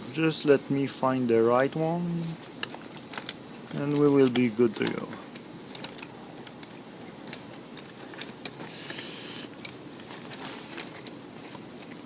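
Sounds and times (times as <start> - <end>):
rustling: 7.3 - 12.0.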